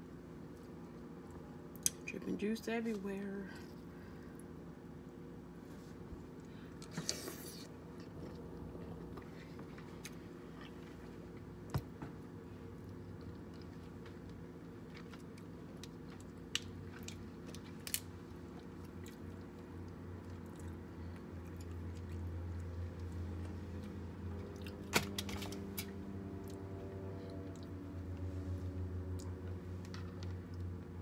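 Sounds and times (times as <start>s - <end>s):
steady low hum: 0.0s - 31.0s
close-up chewing: 6.2s - 11.7s, 12.5s - 24.9s
crab shell cracking: 15.9s - 18.2s.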